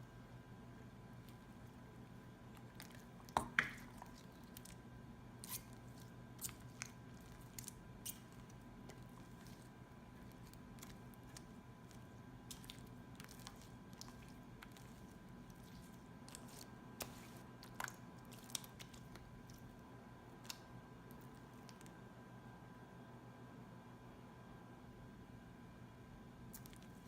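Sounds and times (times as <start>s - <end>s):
slime squelching and popping: 1.2s - 19.8s, 26.5s - 27.0s.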